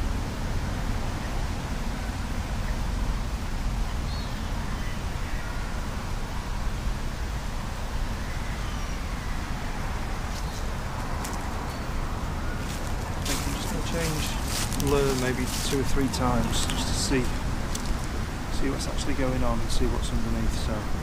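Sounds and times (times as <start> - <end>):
faint bird chirps: 3.8 - 6.5, 7.2 - 9.6.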